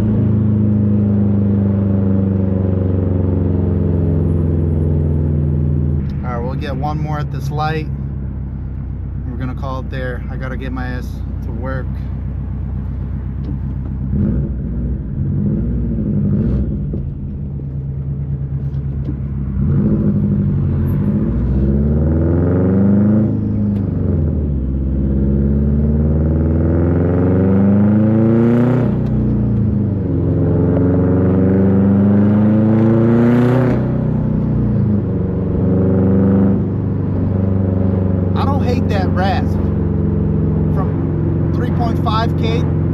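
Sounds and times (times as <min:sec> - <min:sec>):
car engine accelerating through gears: 0:12.0 - 0:42.9.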